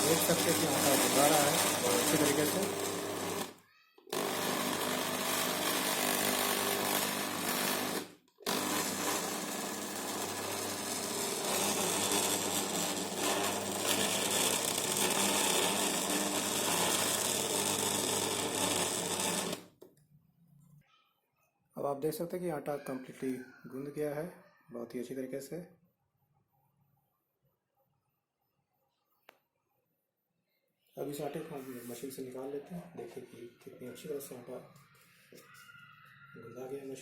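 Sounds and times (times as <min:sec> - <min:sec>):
food chopper motor humming: 0:00.0 - 0:03.5, 0:04.1 - 0:19.6.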